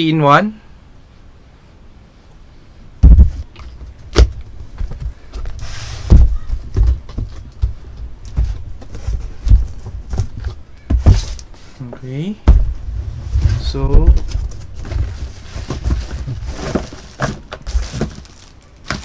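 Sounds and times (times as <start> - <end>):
cardboard packaging knocks and thumps: 3.0 - 11.5, 12.4 - 19.0
packing material rustling: 13.2 - 19.0.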